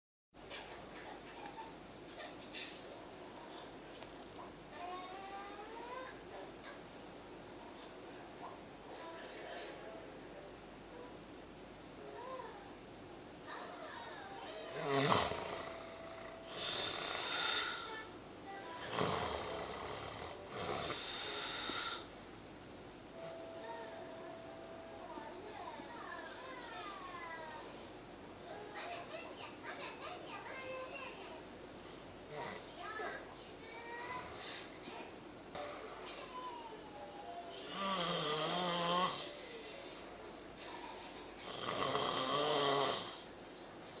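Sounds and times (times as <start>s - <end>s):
man snoring: 14.7s - 17.9s, 18.8s - 22.1s, 37.7s - 39.3s, 41.5s - 43.2s
long hissing breaths: 16.5s - 18.0s, 18.9s - 22.1s.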